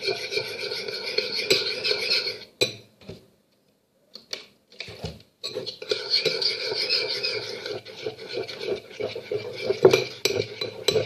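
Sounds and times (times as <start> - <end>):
spoon stirring slime: 0.0 - 2.5, 5.4 - 11.0.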